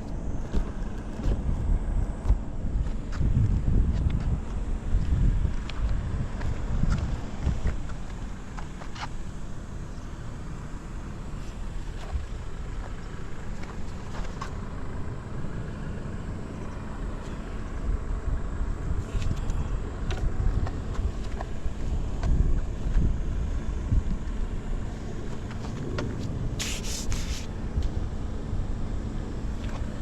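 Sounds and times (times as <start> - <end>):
engine throttle blips: 0.0 - 30.0
brief hiss: 26.6 - 27.5.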